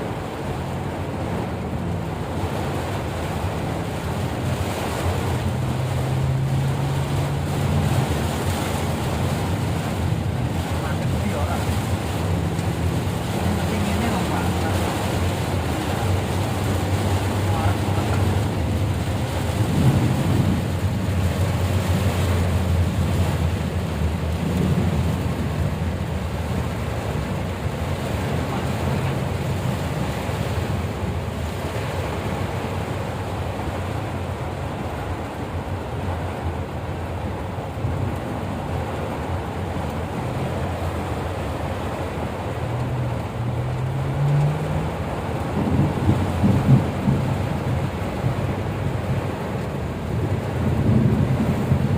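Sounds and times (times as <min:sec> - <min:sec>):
heavy rain: 0:00.0 - 0:51.9
vehicle rumble and hiss: 0:00.0 - 0:51.9
low rumbles and knocks: 0:45.2 - 0:51.9
wind noise on microphone: 0:45.4 - 0:51.9.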